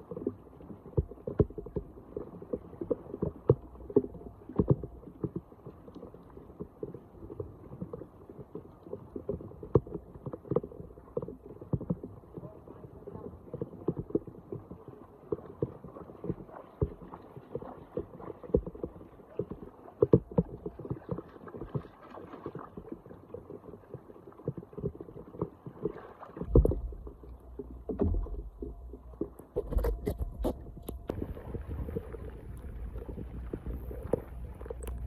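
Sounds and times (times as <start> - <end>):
floodwater splashing: 0.0 - 35.0
low microphone rumbles: 26.4 - 35.0.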